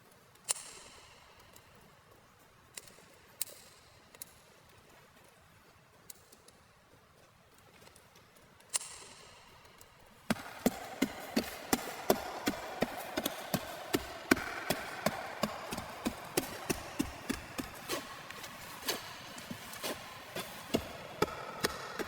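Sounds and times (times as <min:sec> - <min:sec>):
hand tool striking wood: 0:10.3 - 0:22.0.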